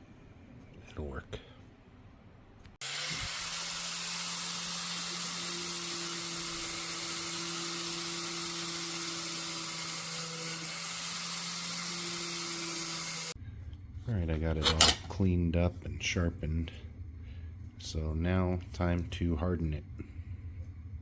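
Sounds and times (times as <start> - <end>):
grinder grinding steel: 2.8 - 13.4, 14.5 - 15.1.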